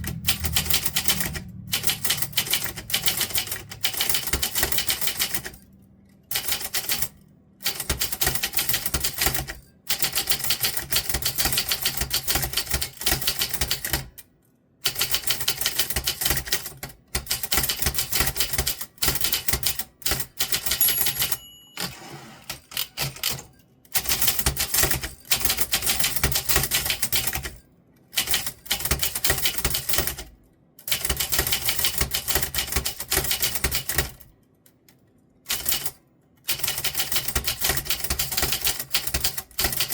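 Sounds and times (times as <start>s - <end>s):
typewriter keys typing: 0.0s - 5.6s, 6.3s - 14.2s, 14.8s - 21.9s, 22.5s - 27.6s, 28.2s - 34.3s, 35.5s - 39.9s
typewriter bell ring: 20.5s - 25.7s.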